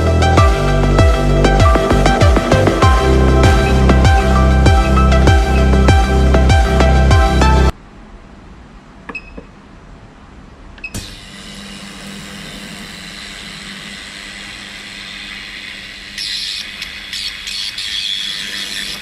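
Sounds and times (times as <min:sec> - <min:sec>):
machine mechanical hum: 0:07.7 - 0:19.0
loud rough machine noise: 0:11.1 - 0:19.0.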